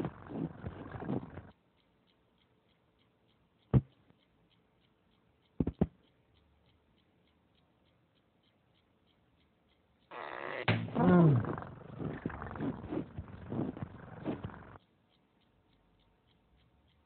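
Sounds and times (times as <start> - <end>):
faint even ticking: 0.0 - 17.0
sharp knocks: 10.6 - 11.1.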